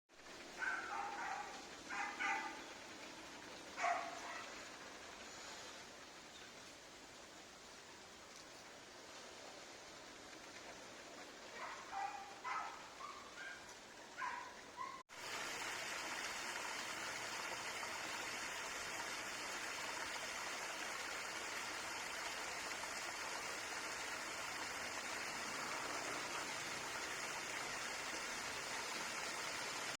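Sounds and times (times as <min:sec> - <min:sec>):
stream water rushing: 0:00.3 - 0:06.2, 0:15.1 - 0:30.0.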